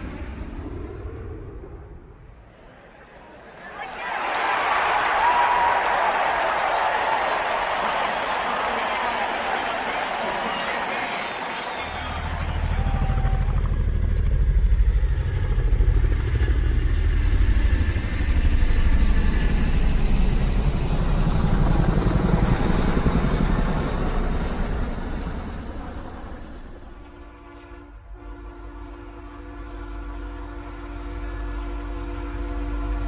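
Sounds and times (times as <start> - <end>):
train passing with low rumble: 11.8 - 33.0.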